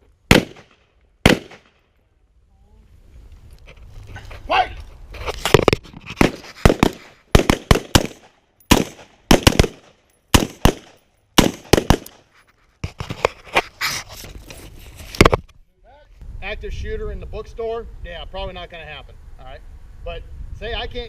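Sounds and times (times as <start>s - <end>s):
rifle shots with echo: 0.3s - 1.8s, 6.2s - 12.2s.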